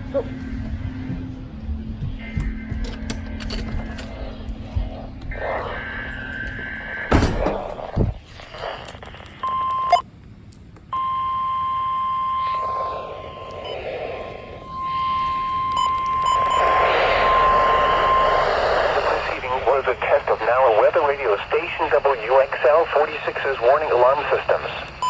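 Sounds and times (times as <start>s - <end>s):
high alarm tone: 10.9s - 21.5s
rushing noise: 11.9s - 25.0s.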